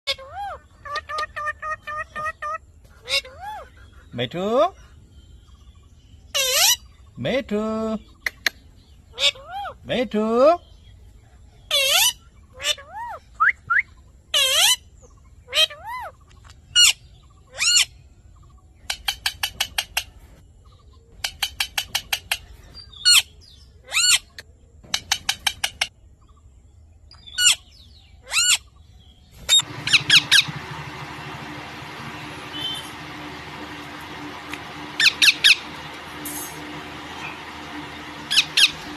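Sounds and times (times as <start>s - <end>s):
parrot chirping rapidly: 0.1s - 3.7s, 6.3s - 6.9s, 11.7s - 16.1s, 16.7s - 18.0s, 27.2s - 28.7s, 29.4s - 38.9s
parrot squawking: 0.1s - 3.7s, 6.3s - 6.8s, 9.1s - 9.8s, 11.7s - 13.2s, 14.3s - 14.8s, 28.2s - 28.7s, 29.5s - 31.0s, 34.8s - 35.7s, 37.7s - 38.9s.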